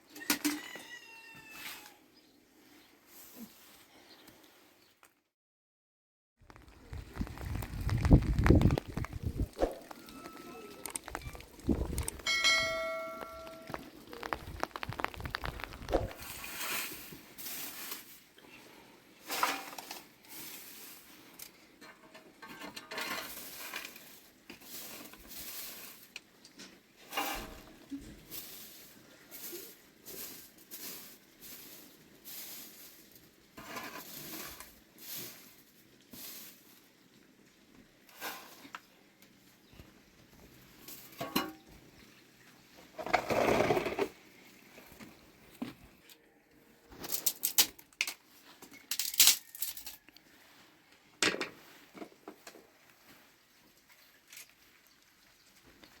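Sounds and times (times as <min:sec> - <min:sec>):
rustling and scraping: 0:06.5 - 0:37.0, 0:38.0 - 0:46.2, 0:46.8 - 0:54.9
bell ringing: 0:12.2 - 0:13.8.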